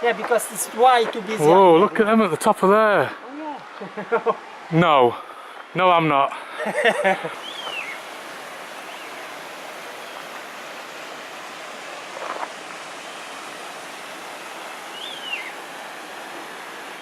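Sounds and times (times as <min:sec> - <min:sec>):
stream rushing: 0:00.0 - 0:17.0
bird whistle: 0:14.9 - 0:15.5.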